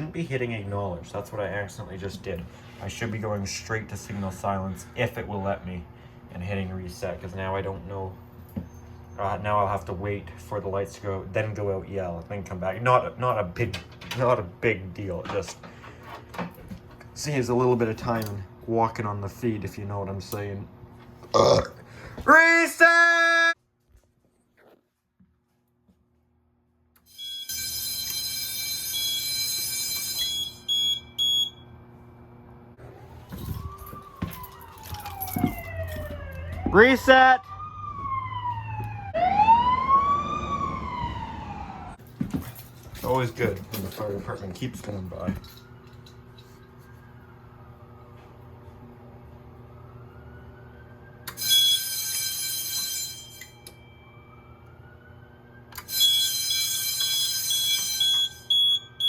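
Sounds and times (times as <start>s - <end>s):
fire alarm tone: 27.0s - 31.8s, 32.8s - 42.0s, 49.8s - 59.0s
emergency vehicle siren passing: 32.8s - 42.0s, 45.2s - 51.6s, 54.1s - 58.7s.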